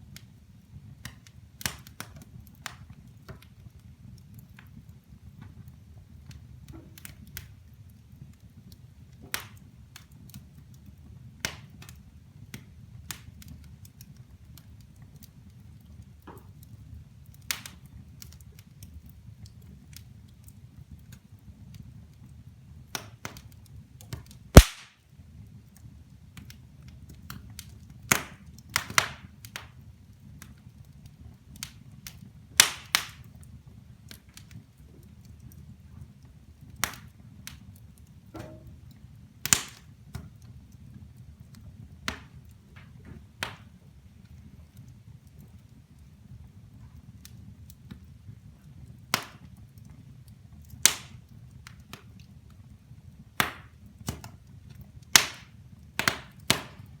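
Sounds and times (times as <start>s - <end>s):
low fire rumble: 0.0s - 57.0s
wood fire crackling and popping: 0.0s - 57.0s.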